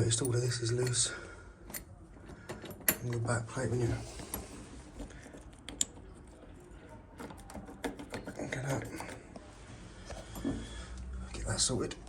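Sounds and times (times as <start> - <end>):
small metal lock parts clicking: 1.6 - 3.4, 4.2 - 9.3.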